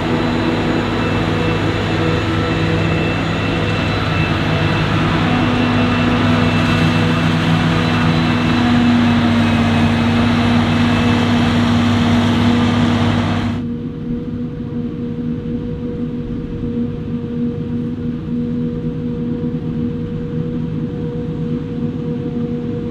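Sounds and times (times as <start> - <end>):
diesel farm machinery drone: 0.0 - 13.7.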